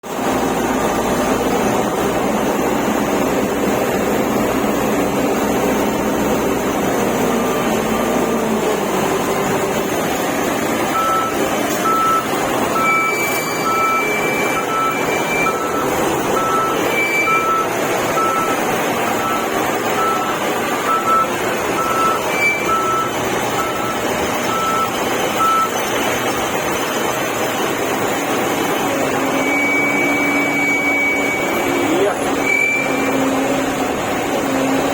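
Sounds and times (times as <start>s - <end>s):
wheel loader engine running: 0.0s - 34.9s
reversing alarm beeping: 10.7s - 26.4s, 29.0s - 33.8s.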